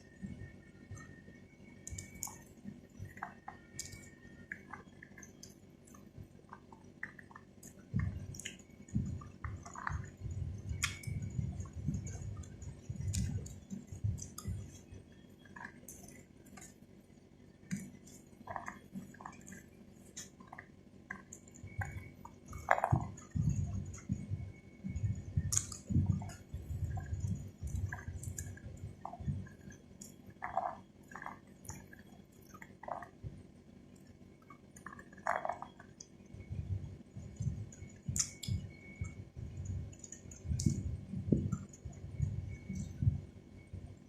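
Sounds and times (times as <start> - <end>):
small sharp clicks: 1.8 - 2.4
wet squishy chewing: 3.1 - 14.9, 17.7 - 24.1, 25.4 - 33.2, 34.5 - 36.1, 37.2 - 43.0.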